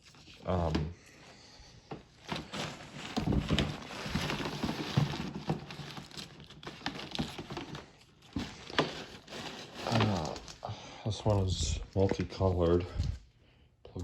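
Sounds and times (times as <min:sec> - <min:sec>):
rummaging through a box: 0:01.9 - 0:10.7.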